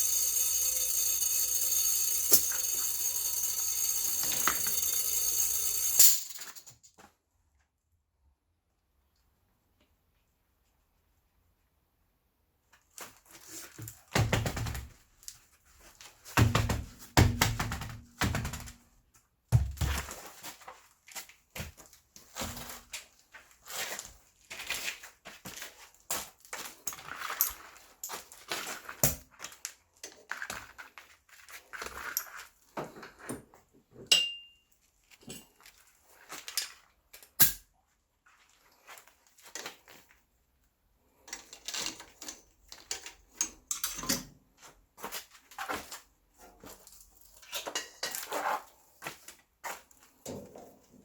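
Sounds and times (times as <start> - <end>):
short metallic ring: 0.0 - 6.7
knocks and thuds: 16.4 - 18.7.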